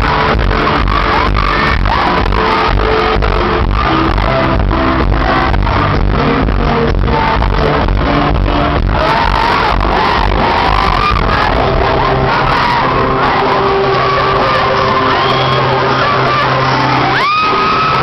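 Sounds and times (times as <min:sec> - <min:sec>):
live pop band playing: 0:00.0 - 0:18.0.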